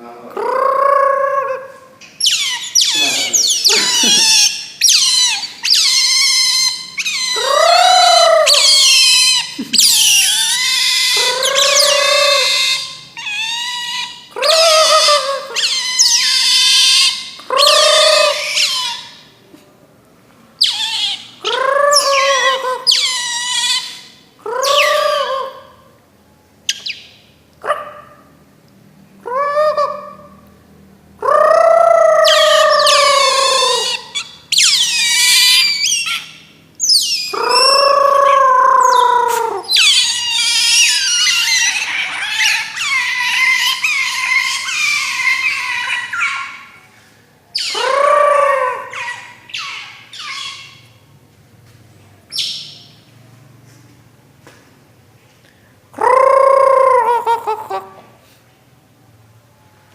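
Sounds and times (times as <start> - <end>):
otter squealing calls: 0.4 - 19.4, 20.6 - 25.8, 31.4 - 46.9, 47.5 - 51.0, 52.3 - 53.0.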